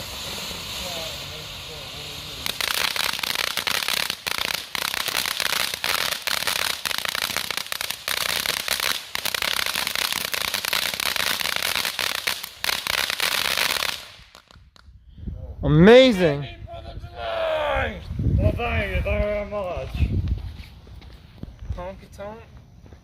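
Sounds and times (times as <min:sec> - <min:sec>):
fountain firework crackling hiss: 0:00.0 - 0:14.8.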